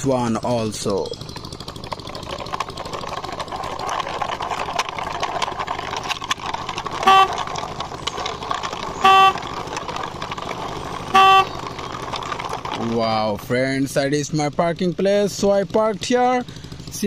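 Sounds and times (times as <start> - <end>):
toy quad bike engine noise: 0.0 - 17.0
short horn beeps: 7.0 - 7.5, 9.0 - 9.6, 11.1 - 11.6.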